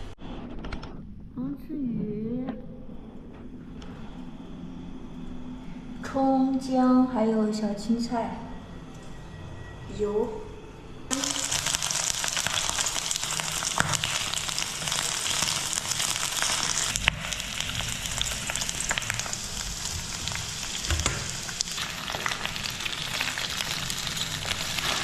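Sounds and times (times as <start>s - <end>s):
fish frying in hot oil: 11.1s - 25.0s.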